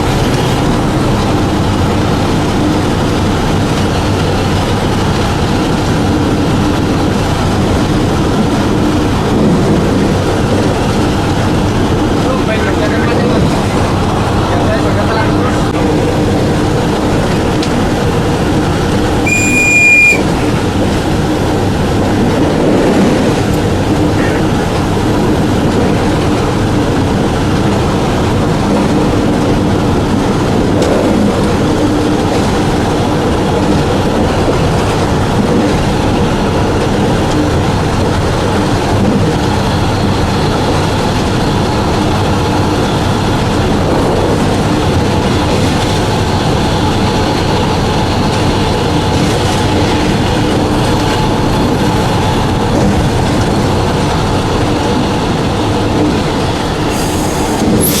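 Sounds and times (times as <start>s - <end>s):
train rumbling on track: 0.0s - 58.0s
high-pitched tone: 19.3s - 20.3s.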